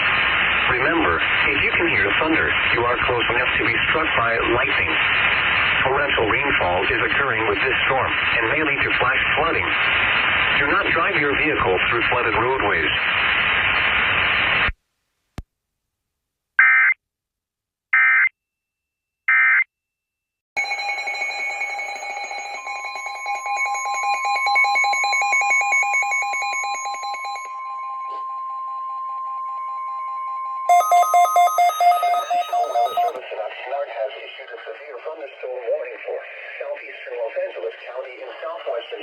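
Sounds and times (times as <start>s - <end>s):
harsh pulsing alarm beep: 20.6s - 33.2s
steady warning alarm tone: 20.6s - 33.2s
screechy digital data bursts: 30.7s - 33.2s.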